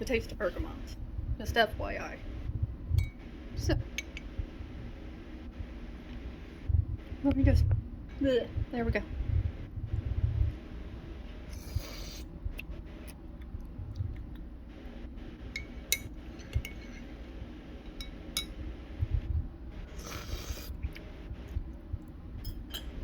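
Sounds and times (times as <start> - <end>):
air conditioner hum: 0.0 - 23.0
slurping sips of tea: 11.5 - 12.3, 20.0 - 20.9.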